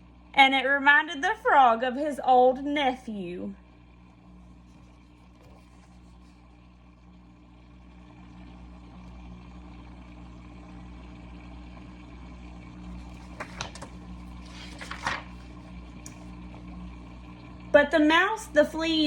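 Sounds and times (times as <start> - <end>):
low electrical hum: 0.0 - 19.0
paper rustling page turn: 4.6 - 6.4, 12.9 - 16.3.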